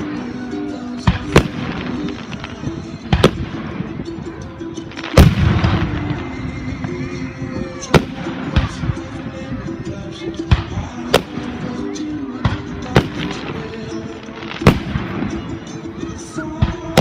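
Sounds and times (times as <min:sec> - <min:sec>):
fireworks crackling: 0:00.0 - 0:17.0
fireworks bangs: 0:01.0 - 0:03.9, 0:05.0 - 0:07.1, 0:12.4 - 0:15.4.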